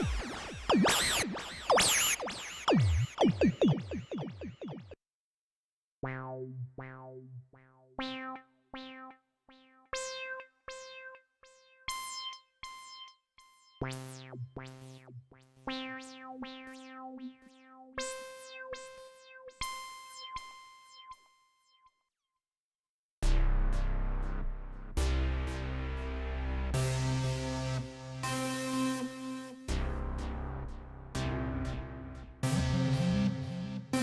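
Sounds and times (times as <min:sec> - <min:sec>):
synthesizer notes: 0:00.0 - 0:05.0, 0:29.9 - 0:34.0.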